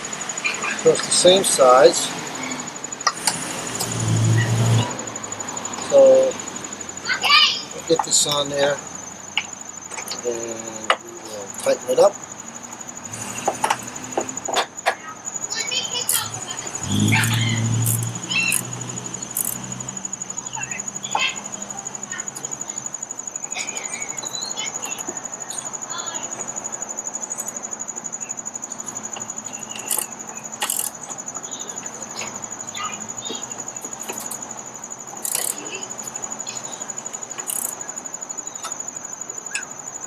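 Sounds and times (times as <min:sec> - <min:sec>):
insect trill: 0:00.0 - 0:40.0
wrench clicking and clinking: 0:17.2 - 0:19.6, 0:29.9 - 0:31.0, 0:35.2 - 0:35.6, 0:37.4 - 0:37.8.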